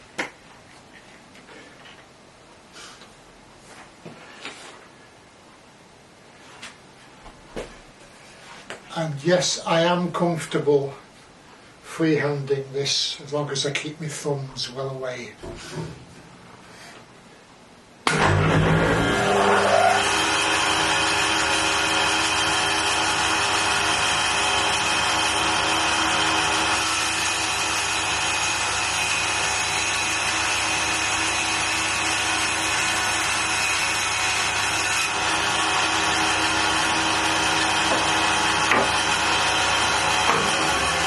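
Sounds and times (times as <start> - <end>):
machine hum: 18.0 - 41.0
bandsaw cutting wood: 18.1 - 41.0.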